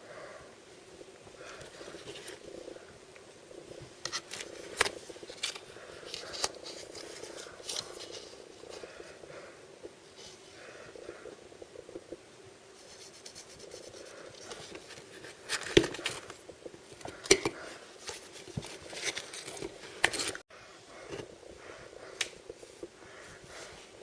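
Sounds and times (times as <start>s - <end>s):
packaging rustling and crinkling: 3.5s - 9.1s, 13.0s - 20.4s.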